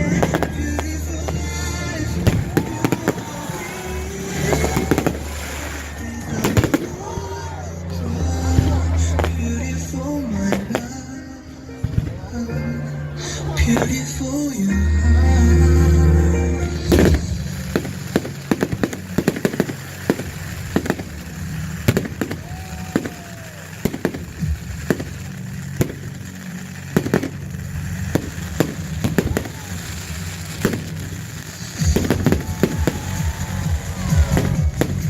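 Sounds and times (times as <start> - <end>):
fireworks bangs and crackles: 0.0 - 12.4, 16.8 - 35.0.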